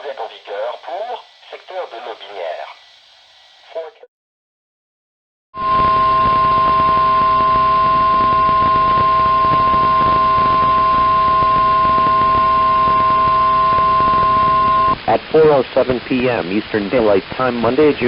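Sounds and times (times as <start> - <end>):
radio hiss: 0.0 - 4.1, 11.4 - 18.0
loud steady high alarm tone: 5.6 - 15.0.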